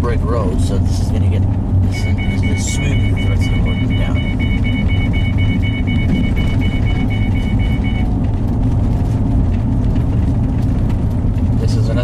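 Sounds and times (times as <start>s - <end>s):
car rumbling over brick road: 0.0s - 12.0s
rapid electronic beeping: 1.8s - 8.2s.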